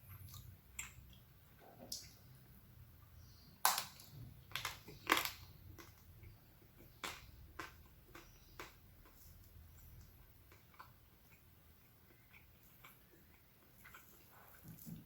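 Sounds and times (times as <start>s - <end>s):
crunching ice cream wafer: 3.6s - 6.0s.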